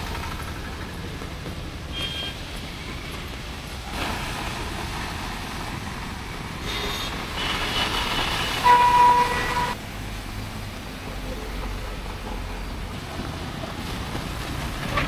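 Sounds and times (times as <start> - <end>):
passing traffic: 0.0 - 15.0
rain hiss: 0.0 - 15.0
vehicle horns honking: 1.9 - 2.6, 6.6 - 9.8.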